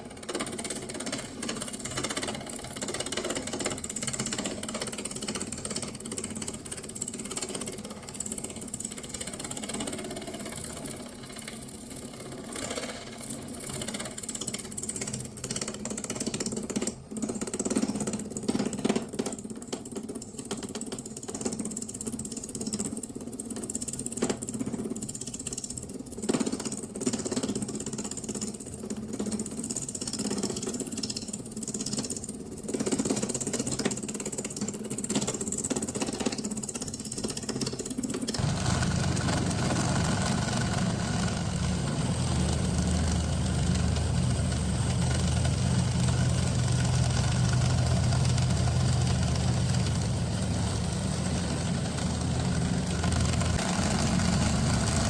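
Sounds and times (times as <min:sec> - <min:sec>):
wood lathe running: 0:38.4 - 0:55.0.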